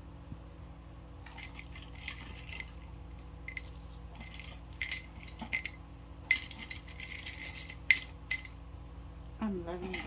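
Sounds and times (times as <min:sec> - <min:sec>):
jewelry clinking and rattling: 0:01.2 - 0:08.6, 0:09.8 - 0:10.0.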